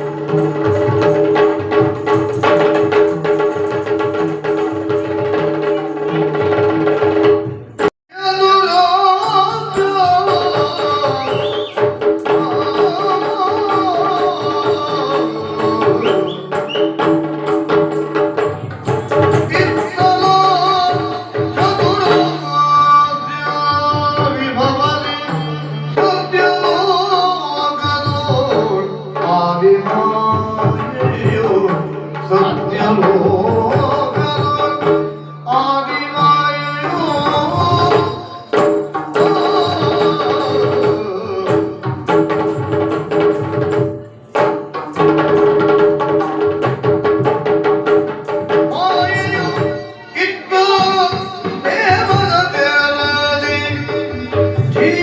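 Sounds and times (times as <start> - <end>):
hand drums playing rhythm: 0.0 - 7.9, 9.1 - 55.0
person singing: 7.6 - 17.1, 18.6 - 45.8, 48.4 - 55.0.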